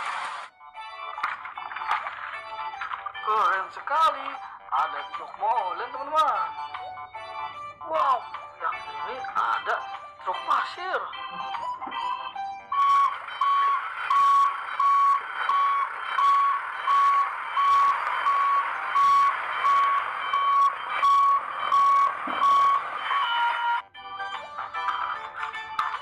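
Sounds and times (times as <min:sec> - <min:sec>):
toy reversing beep: 0:11.1 - 0:25.3.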